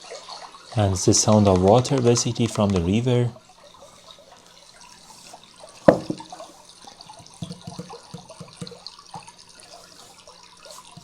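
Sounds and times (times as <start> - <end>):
sharp knock: 5.9 - 6.2
soft taps: 5.9 - 6.3.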